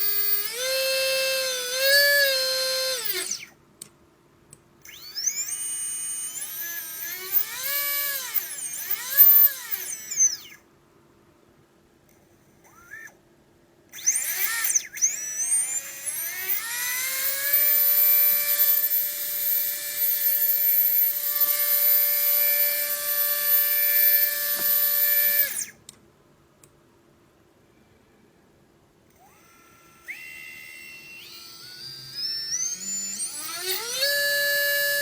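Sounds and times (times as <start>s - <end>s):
drone motor high whine: 0.0s - 3.5s, 4.9s - 10.6s, 14.0s - 25.7s, 29.2s - 35.0s.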